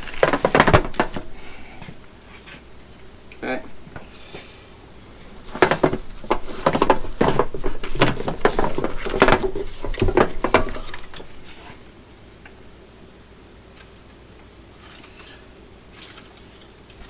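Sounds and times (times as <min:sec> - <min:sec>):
ratchet strap buckles clinking: 0:00.0 - 0:00.4.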